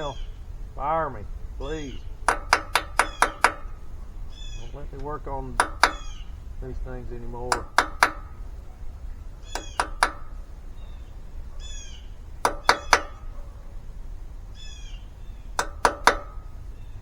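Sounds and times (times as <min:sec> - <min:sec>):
bird chirping: 0:00.0 - 0:17.0
hammer tapping a metal punch: 0:01.7 - 0:08.8, 0:09.4 - 0:10.5, 0:12.4 - 0:13.5, 0:15.6 - 0:16.8.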